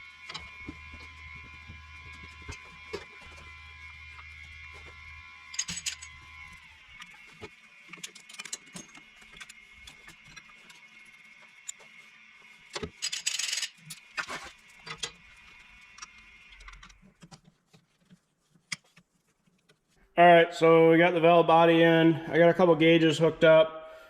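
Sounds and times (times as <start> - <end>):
tools and metal parts clinking: 4.2 - 11.8, 12.7 - 17.0.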